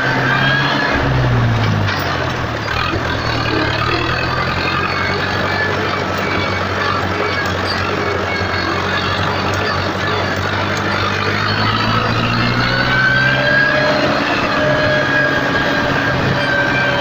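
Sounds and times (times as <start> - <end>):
tractor diesel engine running: 0.0 - 17.0.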